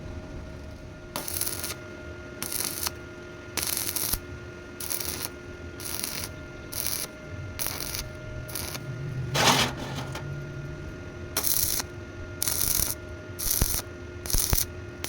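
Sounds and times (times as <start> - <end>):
rhythmic scraping strokes: 8.5 - 11.1.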